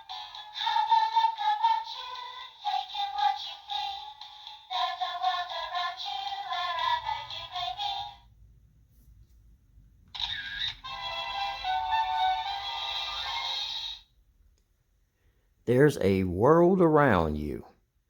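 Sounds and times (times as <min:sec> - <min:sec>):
tinny toy speaker music with singing: 0:00.0 - 0:08.3, 0:10.2 - 0:14.1.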